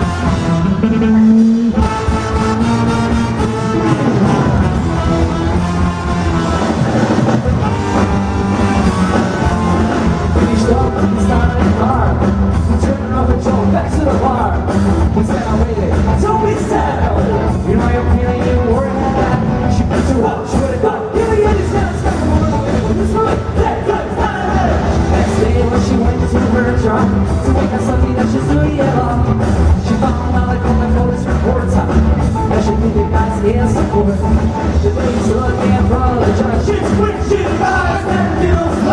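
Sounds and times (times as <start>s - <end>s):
person singing: 0.0s - 2.0s, 3.5s - 38.9s
live rock band playing loudly: 0.0s - 38.9s.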